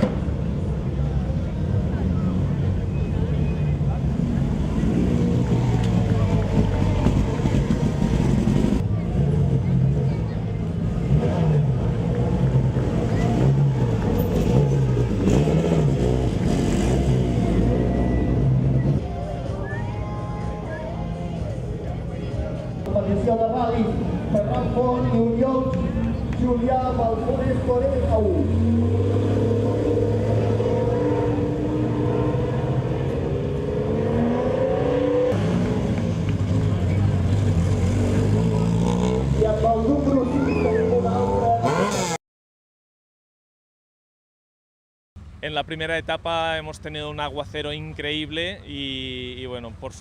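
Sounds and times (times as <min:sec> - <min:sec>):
rally car engine revving: 0:04.1 - 0:19.2, 0:23.9 - 0:42.2.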